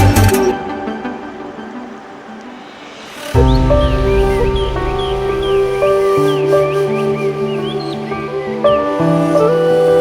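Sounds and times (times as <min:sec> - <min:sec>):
background music with slow bass: 0:00.0 - 0:10.0
bird-like chirps: 0:03.0 - 0:09.1.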